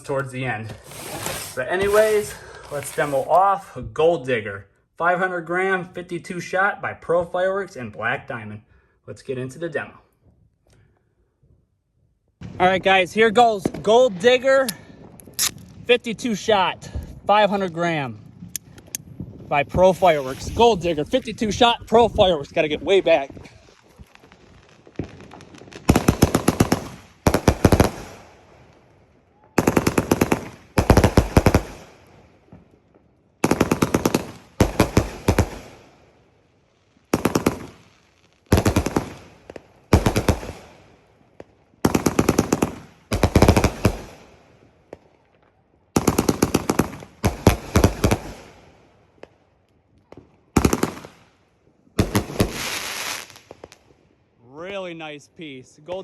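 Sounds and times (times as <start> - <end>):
firework bangs: 0.6 - 3.4, 18.2 - 32.7, 33.4 - 35.8, 38.5 - 44.3, 46.0 - 48.6, 52.0 - 53.8.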